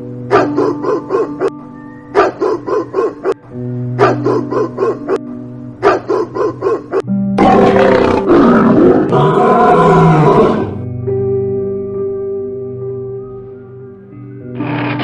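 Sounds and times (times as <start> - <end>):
background music: 0.0 - 15.0
dog barking: 0.3 - 3.4, 4.0 - 5.2, 5.8 - 7.1
big cat roaring: 7.4 - 10.8.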